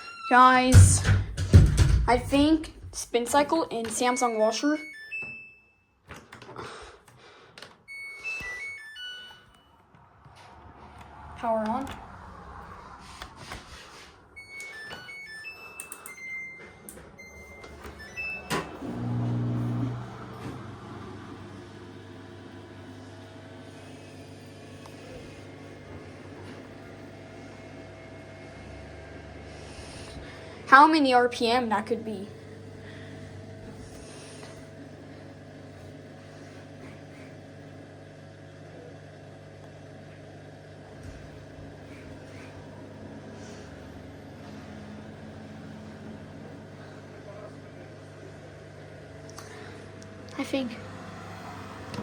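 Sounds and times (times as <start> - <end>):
washing machine spin cycle: 0.0 - 5.5, 6.2 - 52.0
washing machine panel beeping: 14.4 - 20.0.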